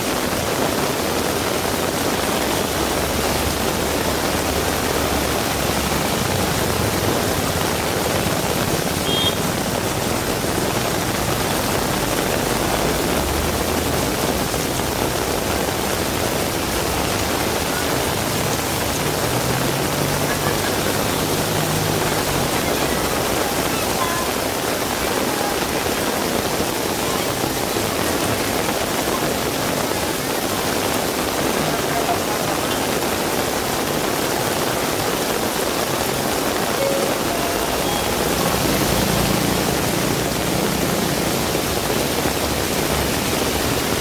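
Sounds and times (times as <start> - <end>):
heavy rain falling: 0.0 - 44.0
passing vehicle engine hum: 2.6 - 24.6, 35.2 - 44.0.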